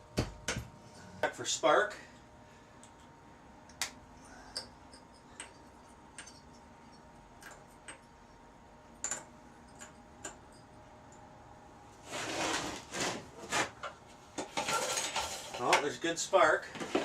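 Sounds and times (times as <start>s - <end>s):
metal tools clicking and tapping: 3.7s - 8.2s, 9.0s - 11.3s.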